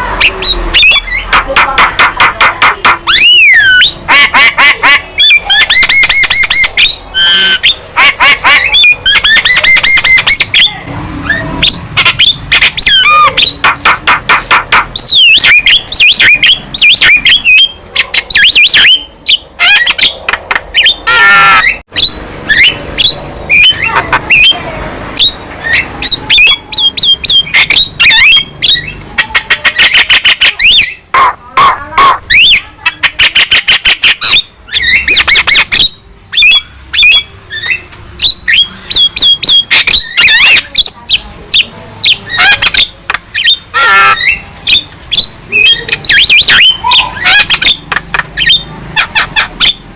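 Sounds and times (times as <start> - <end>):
myna bird singing: 0.0 - 49.9.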